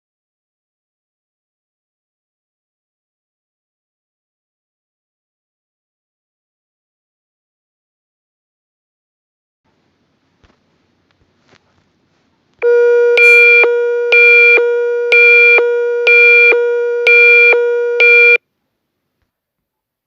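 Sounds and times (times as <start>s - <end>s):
higher pulsing beep: 12.6s - 18.4s
low buzzing alert tone: 12.6s - 18.4s.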